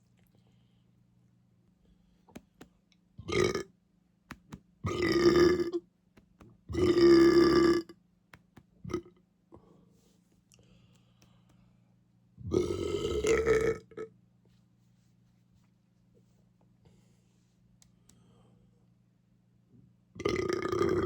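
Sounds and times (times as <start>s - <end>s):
person belching: 3.2s - 3.7s, 4.9s - 5.8s, 6.7s - 7.9s, 12.4s - 14.1s, 20.2s - 21.0s.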